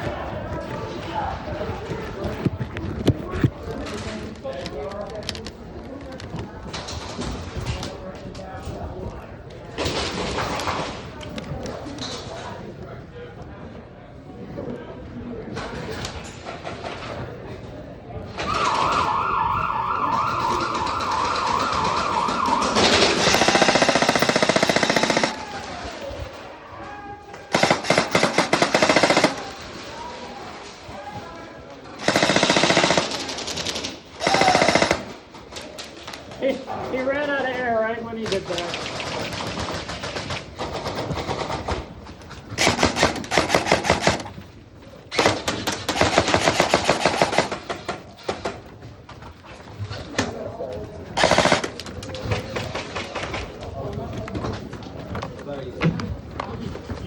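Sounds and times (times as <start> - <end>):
siren warbling: 18.5 - 23.2
airsoft guns firing full-auto: 20.2 - 26.0, 27.5 - 29.9, 32.0 - 35.2, 42.6 - 44.4, 45.1 - 48.6, 51.2 - 53.4.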